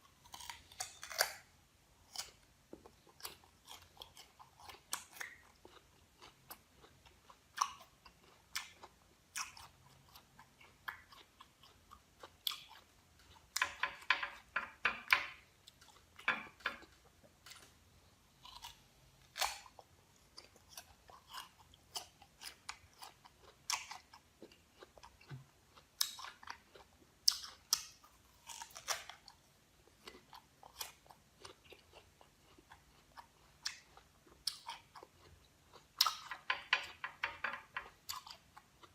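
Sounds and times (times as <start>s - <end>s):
person chewing crunchy fruit: 0.0s - 13.6s, 15.3s - 36.4s, 37.8s - 38.9s.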